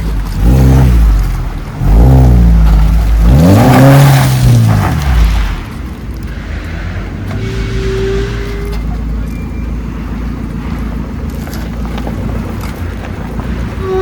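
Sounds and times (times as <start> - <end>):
engine running at low revs: 0.0 - 14.0
held tone: 7.3 - 9.8.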